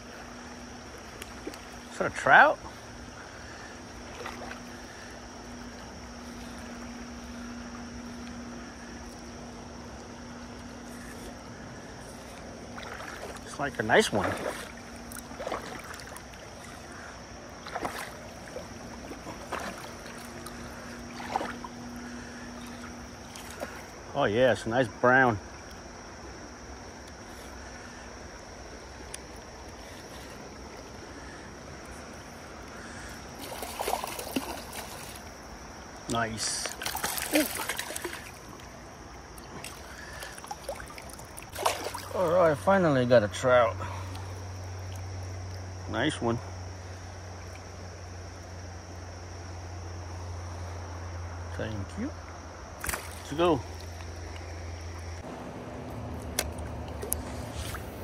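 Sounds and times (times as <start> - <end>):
river water rushing: 0.0 - 10.6, 11.3 - 24.1, 27.9 - 45.5
low hum: 0.0 - 24.2, 43.1 - 58.0
water splashing: 0.0 - 24.2, 26.9 - 45.8, 52.7 - 58.0.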